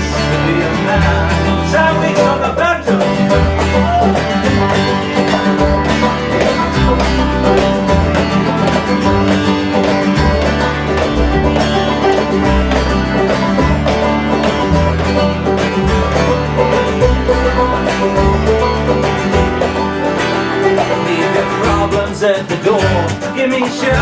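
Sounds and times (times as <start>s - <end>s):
bass line: 0.0s - 24.0s
plucked strings: 0.0s - 24.0s.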